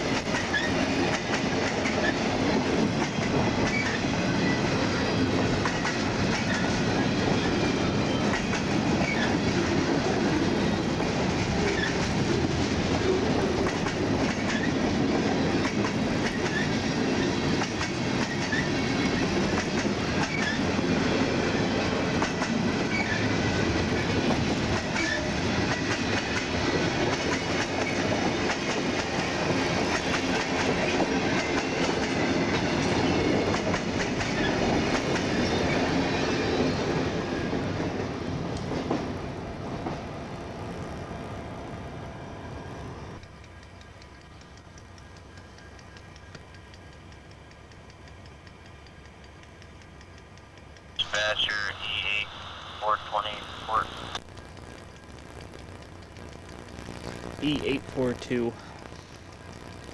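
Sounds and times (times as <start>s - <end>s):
clickety-clack over rail joints: 0.0s - 40.1s, 43.2s - 51.0s
train wheels rumbling on rails: 0.0s - 51.7s.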